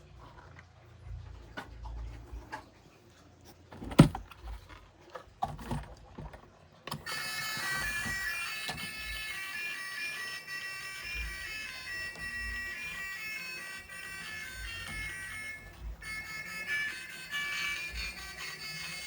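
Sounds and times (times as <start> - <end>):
plastic toys clicking and knocking: 3.7 - 19.0
reedy electronic tune: 7.1 - 19.0.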